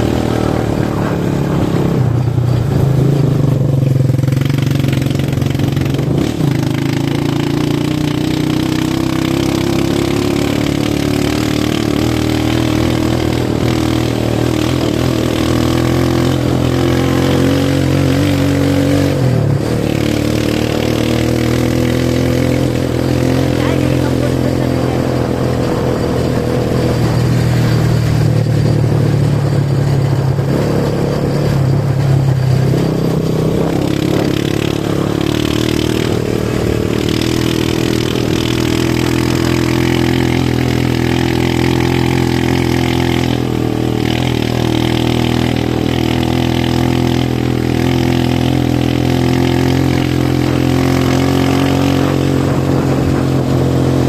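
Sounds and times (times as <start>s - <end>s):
engine running: 0.0s - 54.0s.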